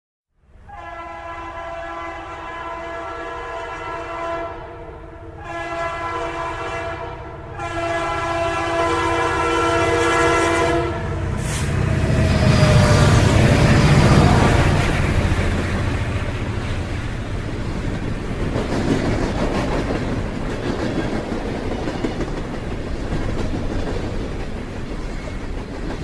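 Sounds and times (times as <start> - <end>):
train horn blasts: 0.6 - 15.4
goods train rumbling: 0.6 - 26.0.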